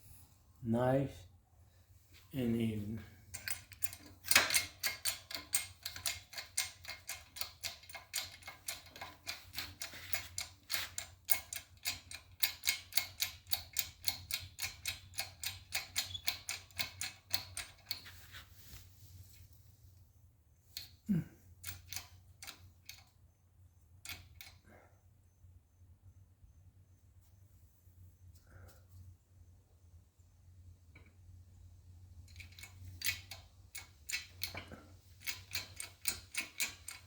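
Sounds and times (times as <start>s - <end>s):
hand pump metallic clicks: 3.3s - 18.2s, 21.6s - 23.1s, 24.0s - 24.6s, 32.3s - 37.0s
person grunting: 21.1s - 21.3s.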